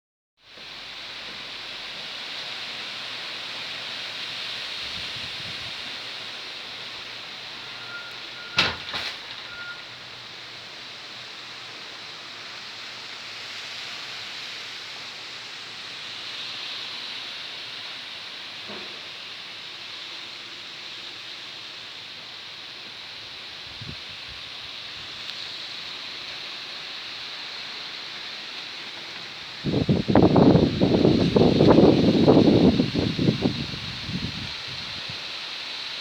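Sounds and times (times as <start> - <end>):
strong wind blowing: 4.8 - 5.9, 29.5 - 35.2
faint high squeak: 7.6 - 9.9.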